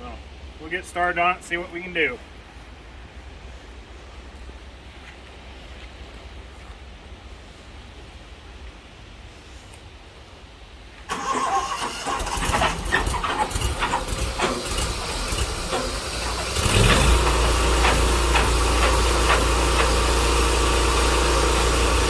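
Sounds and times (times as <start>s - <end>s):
sawmill engine starting and running: 11.1s - 22.0s.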